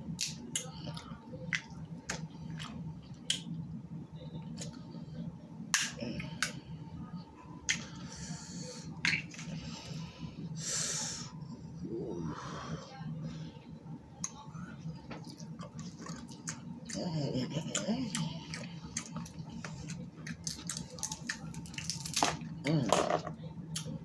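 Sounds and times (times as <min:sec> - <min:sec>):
crab shells cracking: 0:20.3 - 0:22.4.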